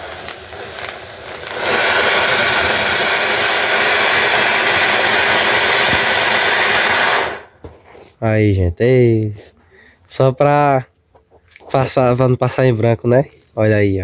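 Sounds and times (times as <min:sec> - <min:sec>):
firework fountain hissing: 0:00.0 - 0:07.6.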